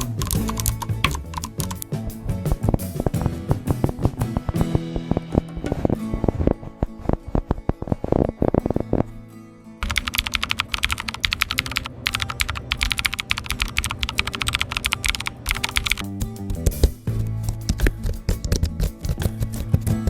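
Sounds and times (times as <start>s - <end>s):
fast typing on keyboard: 0.0s - 1.8s, 9.8s - 16.0s
background music: 0.0s - 20.0s.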